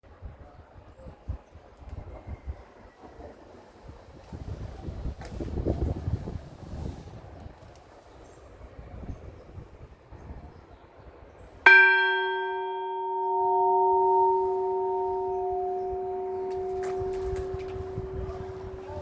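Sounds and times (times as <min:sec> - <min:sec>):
large church bell ringing: 0:11.7 - 0:19.0.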